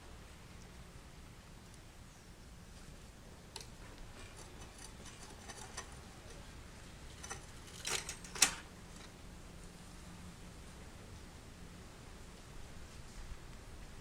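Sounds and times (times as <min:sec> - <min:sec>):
tools and bicycle parts clicking: 0:03.6 - 0:06.4, 0:07.1 - 0:09.1.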